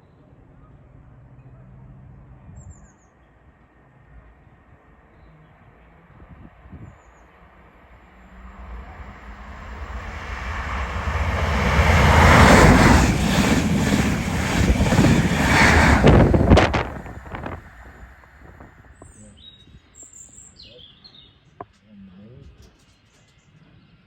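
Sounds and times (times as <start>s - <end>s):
train passing at speed: 7.3s - 19.3s.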